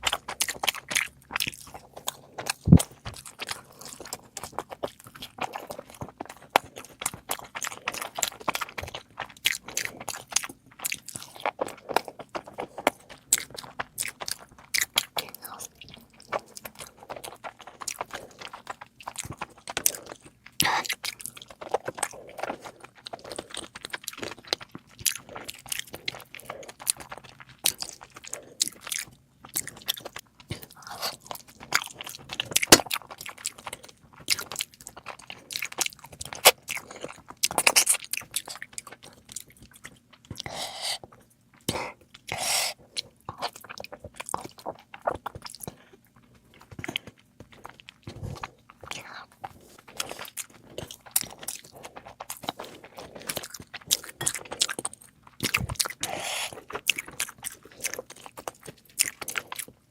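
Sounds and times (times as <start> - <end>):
person chewing crunchy food: 0.0 - 59.9.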